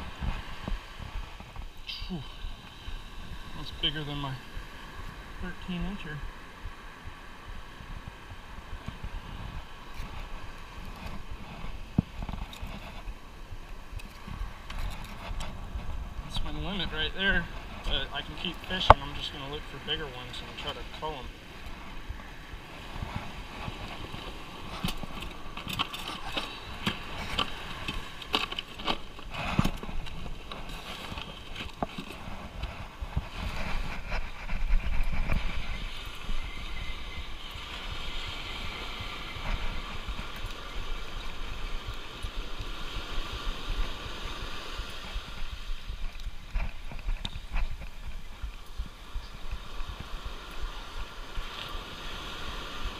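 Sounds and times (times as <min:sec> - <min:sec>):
surf: 0:00.0 - 0:52.9
wind on microphone: 0:00.0 - 0:52.9
clicks and knocks of handled gear: 0:24.7 - 0:32.7.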